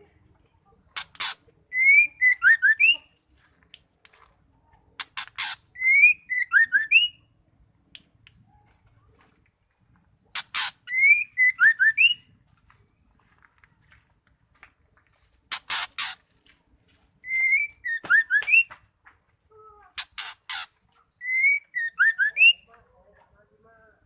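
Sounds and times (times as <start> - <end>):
bird calling: 17.2 - 18.8, 19.9 - 22.7.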